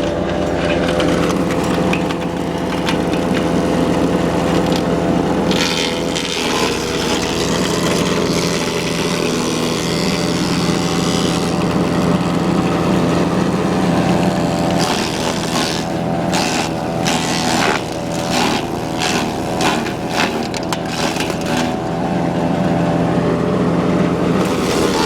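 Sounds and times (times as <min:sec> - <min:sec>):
wood chipper engine running: 0:00.0 - 0:25.0
branches crunching: 0:14.4 - 0:22.2.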